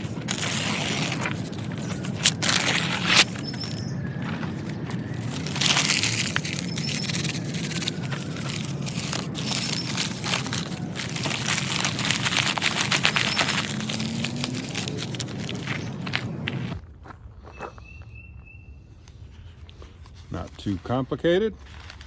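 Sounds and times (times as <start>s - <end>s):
newspaper crumpling: 0.0s - 16.8s.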